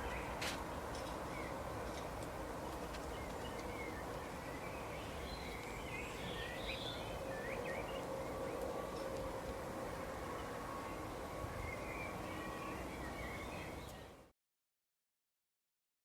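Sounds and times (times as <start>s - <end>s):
bird chirps: 3.1s - 8.4s.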